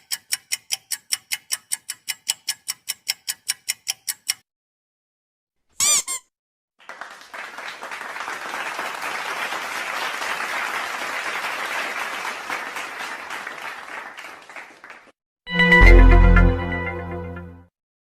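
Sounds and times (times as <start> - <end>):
squeaky pitch-bending sound effect: 5.8 - 6.3
crowd applauding: 6.8 - 15.2.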